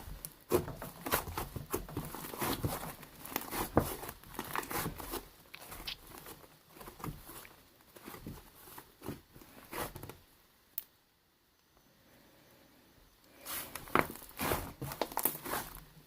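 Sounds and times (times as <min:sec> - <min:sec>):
slime squishing with sticky crackles: 0:00.0 - 0:10.2, 0:13.4 - 0:16.0.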